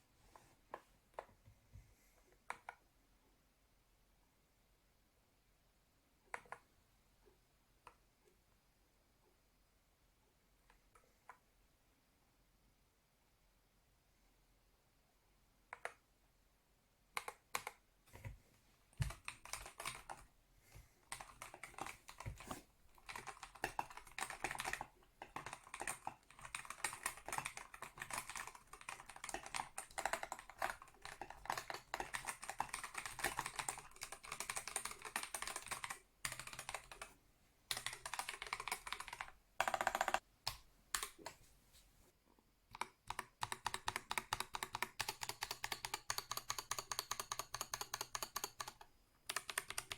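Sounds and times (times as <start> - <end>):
mechanical keyboard typing: 17.2 - 17.8, 19.0 - 20.3, 21.1 - 37.1, 37.7 - 41.2, 42.7 - 49.9.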